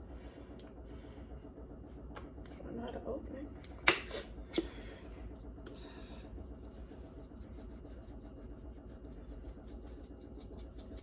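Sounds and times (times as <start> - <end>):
seasoning container shaking: 6.5 - 11.0.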